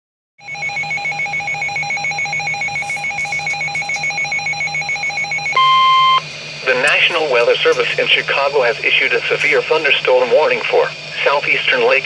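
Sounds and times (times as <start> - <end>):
rapidly pulsing electronic beep: 0.4 - 7.1.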